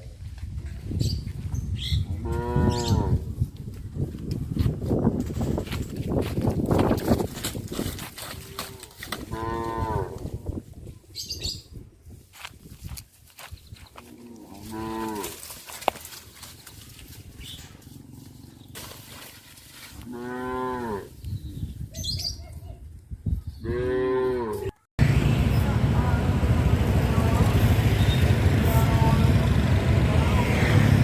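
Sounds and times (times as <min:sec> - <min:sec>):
cattle mooing: 0:02.2 - 0:03.2, 0:08.4 - 0:10.2, 0:14.1 - 0:15.4, 0:20.0 - 0:21.1, 0:23.6 - 0:24.8.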